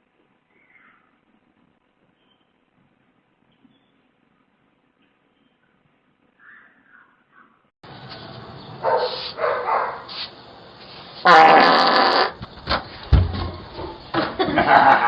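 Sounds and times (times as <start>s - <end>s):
person farting: 11.2s - 12.4s.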